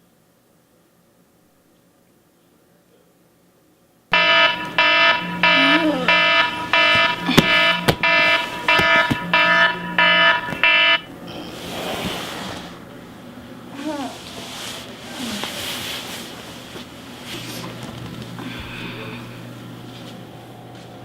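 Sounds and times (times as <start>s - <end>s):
electronic alarm beeping: 4.1s - 11.5s
sharp knocks: 6.1s - 11.0s.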